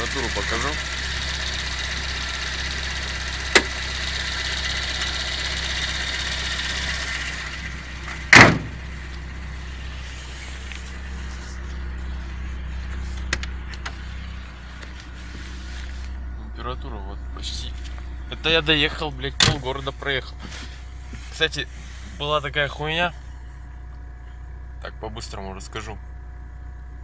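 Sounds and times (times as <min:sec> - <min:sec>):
car engine idling with tappet clatter: 0:00.0 - 0:27.0
car door shutting: 0:03.5 - 0:03.8, 0:08.1 - 0:08.8.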